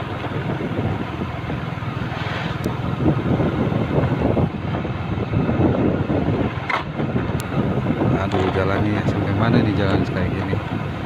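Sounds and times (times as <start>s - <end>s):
vehicle engine running: 0.0s - 4.5s, 7.4s - 11.0s.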